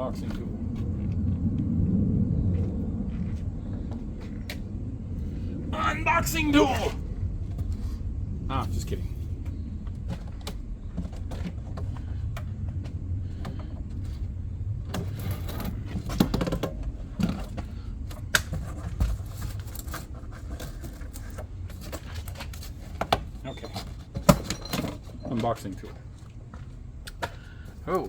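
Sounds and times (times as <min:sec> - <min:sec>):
steady low rumble: 0:00.0 - 0:19.7.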